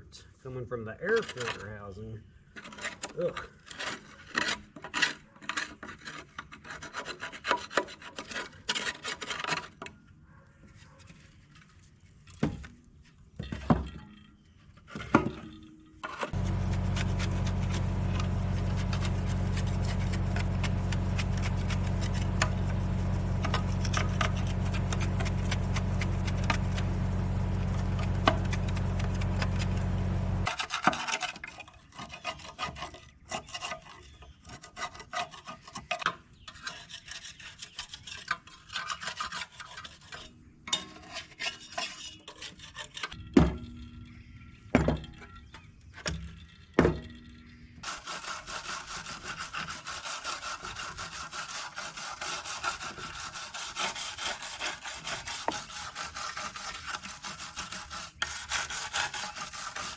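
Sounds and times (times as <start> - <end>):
scraping on metal housing: 16.2 - 30.5
machine humming with rattle: 16.4 - 30.5.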